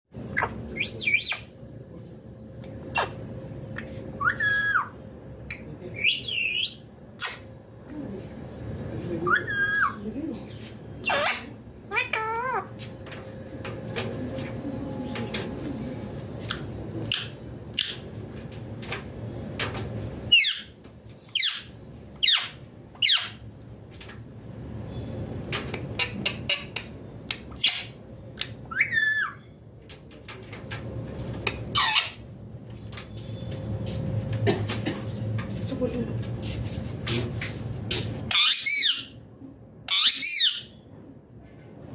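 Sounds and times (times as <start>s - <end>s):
low steady hum: 0.2s - 38.4s
parrot chirps: 0.3s - 1.5s, 4.2s - 7.5s, 9.3s - 10.0s, 11.0s - 12.7s, 20.3s - 23.4s, 26.0s - 29.5s, 31.5s - 32.2s, 38.3s - 39.2s, 39.8s - 40.8s
parrot screeching: 0.3s - 1.5s, 4.2s - 5.0s, 9.3s - 10.0s, 11.0s - 12.7s, 20.3s - 23.4s, 28.7s - 29.4s, 31.7s - 32.2s, 38.3s - 39.2s, 39.8s - 40.8s.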